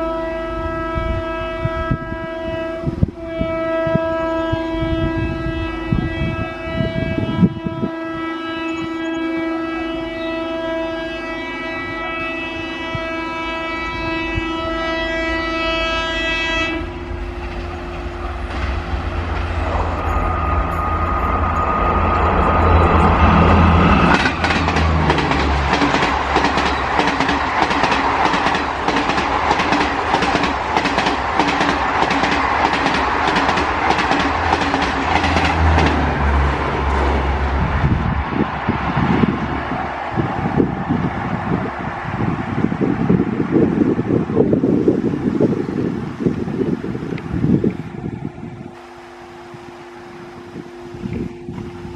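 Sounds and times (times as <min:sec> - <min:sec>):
train horn: 0:00.0 - 0:44.8, 0:48.7 - 0:51.9
train wheels clattering over rails: 0:22.1 - 0:37.1.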